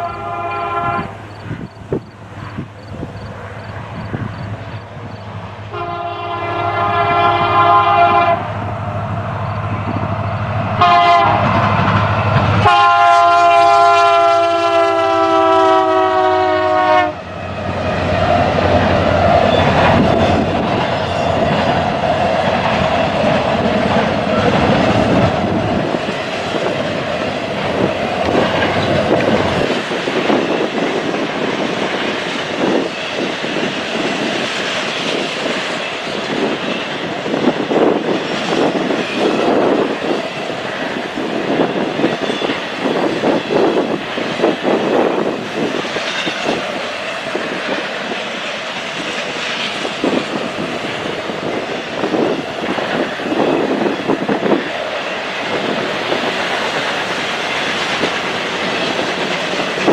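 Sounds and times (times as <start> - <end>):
locomotive horn blasts: 0.0 - 1.2, 5.7 - 8.5, 10.8 - 11.5, 12.6 - 17.2
train wheels clattering over rails: 17.5 - 59.9.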